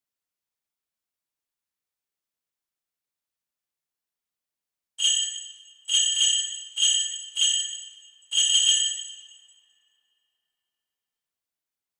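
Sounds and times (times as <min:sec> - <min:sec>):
sleigh bells jingling: 0:05.0 - 0:09.8.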